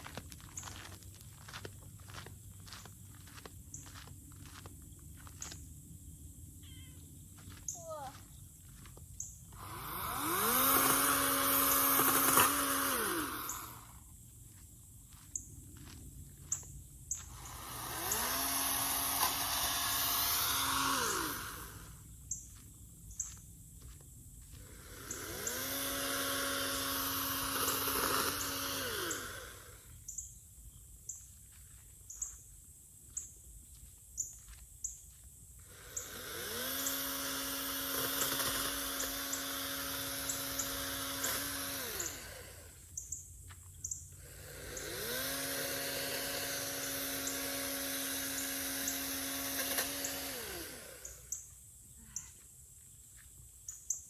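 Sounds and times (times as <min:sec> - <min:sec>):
chainsaw motor running: 0:07.4 - 0:22.7, 0:23.3 - 0:30.2, 0:35.6 - 0:51.6.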